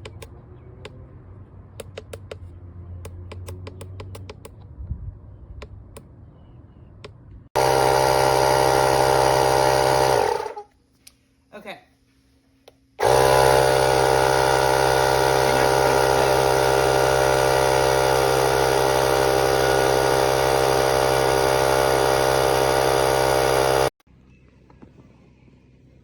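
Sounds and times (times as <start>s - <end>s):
air compressor running: 7.6s - 10.7s, 13.0s - 24.0s.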